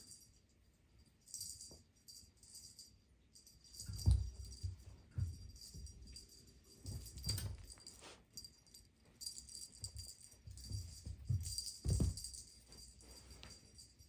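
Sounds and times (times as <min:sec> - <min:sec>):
cat toy jingling and rattling: 0:01.2 - 0:14.0
soft thumps on floor: 0:03.8 - 0:06.0, 0:10.6 - 0:12.5.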